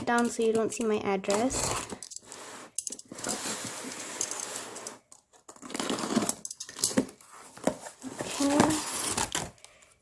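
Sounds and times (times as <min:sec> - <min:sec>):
cardboard box rustling and scraping: 0:01.4 - 0:05.0, 0:05.6 - 0:06.4, 0:07.0 - 0:09.5.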